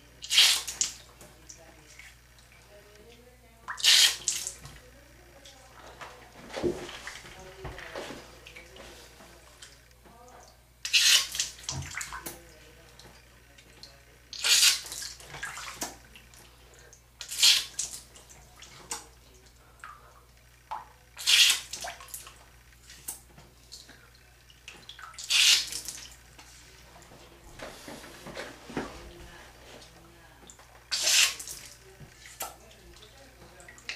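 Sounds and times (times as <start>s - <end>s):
water squirting: 0.2s - 1.1s, 3.7s - 4.6s, 10.8s - 12.4s, 14.3s - 16.0s, 17.2s - 19.1s, 21.2s - 23.8s, 24.6s - 26.2s, 30.9s - 32.6s.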